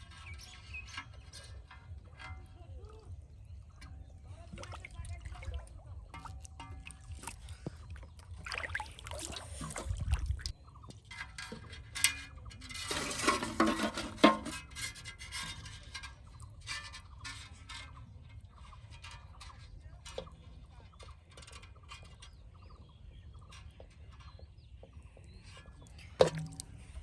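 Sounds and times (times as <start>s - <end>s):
rubbing and scraping: 0.0s - 20.4s.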